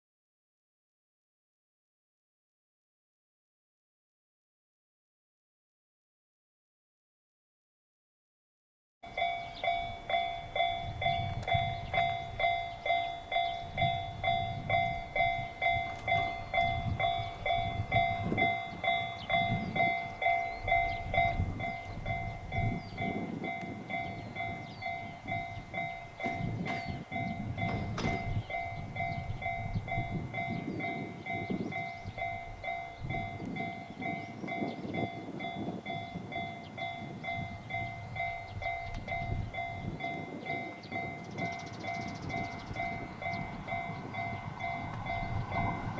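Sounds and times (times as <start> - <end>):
level crossing warning bell: 9.0 - 45.9
low train rumble: 9.1 - 45.9
train wheels clattering over rail joints: 25.8 - 29.1.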